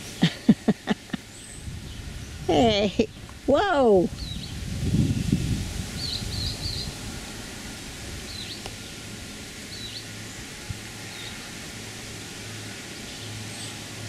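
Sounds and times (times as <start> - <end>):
small bird chirping: 4.1 - 4.6.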